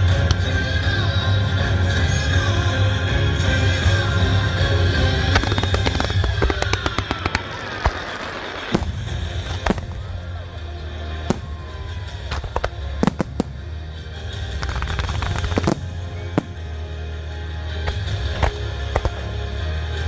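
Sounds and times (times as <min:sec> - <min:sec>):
aerial fireworks bangs: 0:05.4 - 0:17.2.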